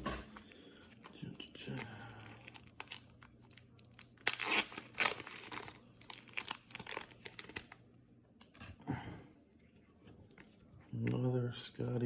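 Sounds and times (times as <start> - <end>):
plastic packaging crinkling: 0.5 - 7.8.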